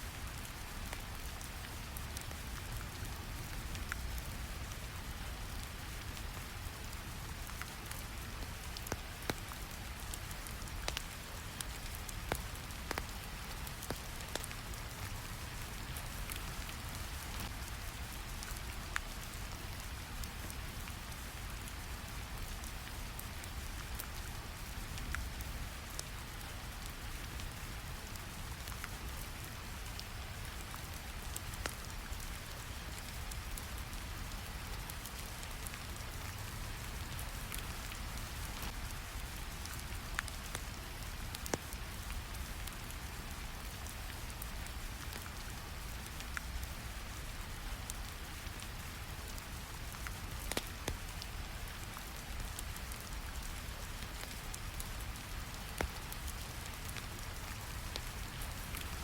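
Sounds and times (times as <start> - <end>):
rain patter: 0.0 - 59.0
sharp crackles: 50.4 - 51.3.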